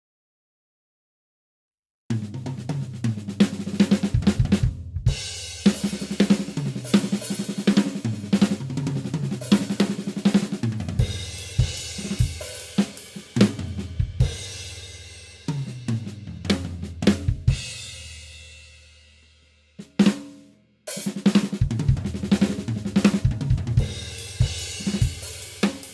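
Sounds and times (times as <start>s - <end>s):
drum kit playing: 2.1s - 19.0s, 19.8s - 25.9s.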